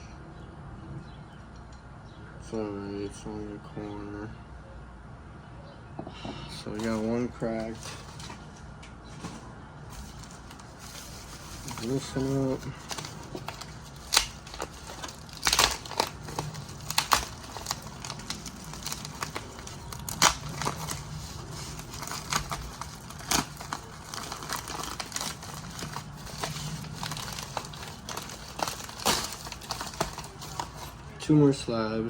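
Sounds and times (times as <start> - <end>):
packaging crinkling: 6.8 - 8.5, 9.2 - 31.2.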